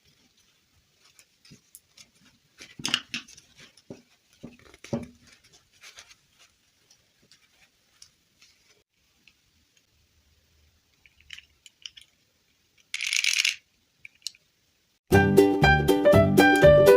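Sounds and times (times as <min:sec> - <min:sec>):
piano music: 0:15.1 - 0:16.9.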